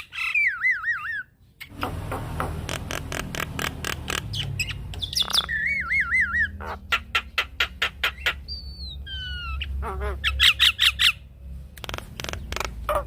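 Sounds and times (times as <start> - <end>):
bird clicking chatter: 11.8 - 12.8.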